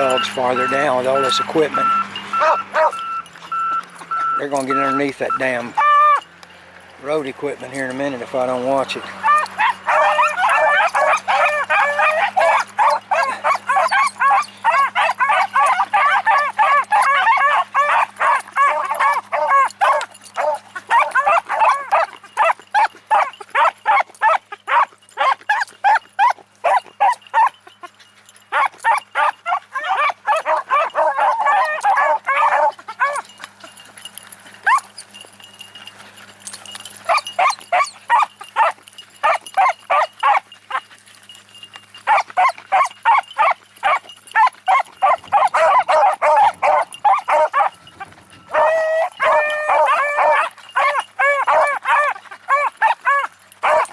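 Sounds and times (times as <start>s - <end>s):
beagles baying: 0.0s - 53.9s.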